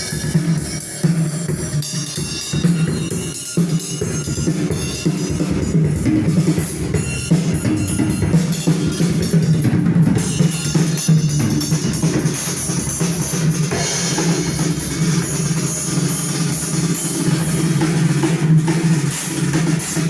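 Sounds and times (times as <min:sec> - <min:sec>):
drum kit kick and snare: 0:00.0 - 0:20.0
music: 0:00.0 - 0:20.0.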